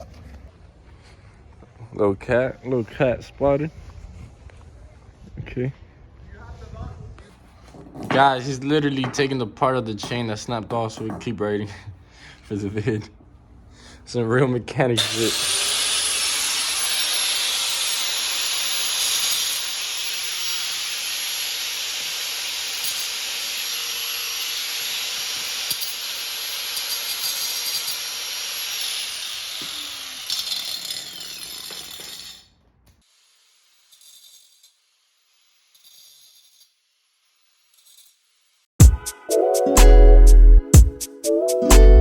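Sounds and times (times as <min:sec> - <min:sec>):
power tool hissing and whining: 0:15.0 - 0:32.4.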